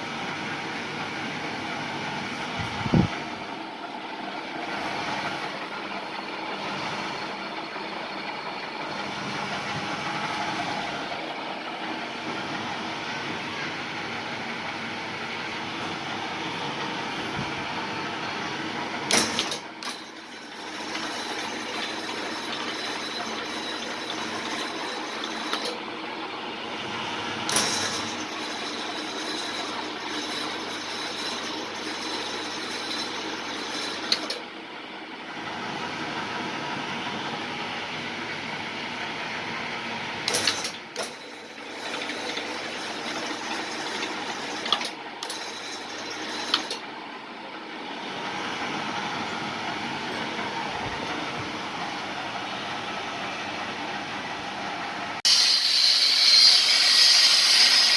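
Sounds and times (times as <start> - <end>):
drilling machine clattering: 19.0 - 25.9, 27.5 - 34.5, 40.2 - 46.9, 55.3 - 57.9.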